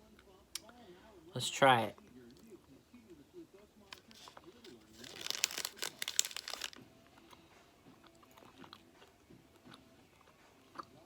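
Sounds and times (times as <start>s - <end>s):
chewing gummy snack: 4.0s - 11.0s.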